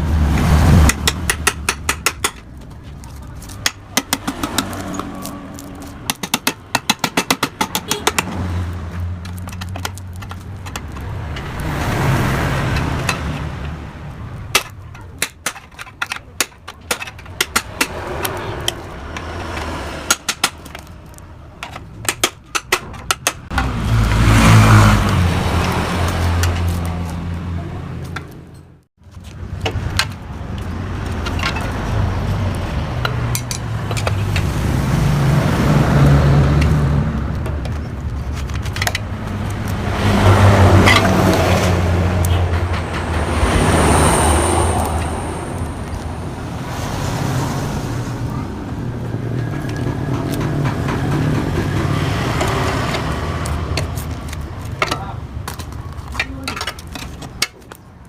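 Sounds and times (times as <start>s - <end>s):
rushing noise: 0.0s - 14.6s, 17.1s - 22.0s, 29.3s - 54.6s.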